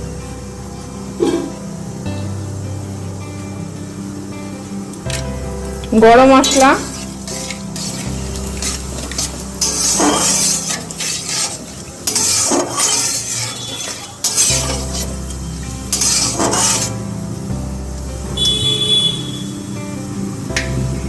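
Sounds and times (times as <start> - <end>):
spices sizzling in hot oil: 4.0 - 21.0
spatula scraping and stirring: 6.4 - 17.0.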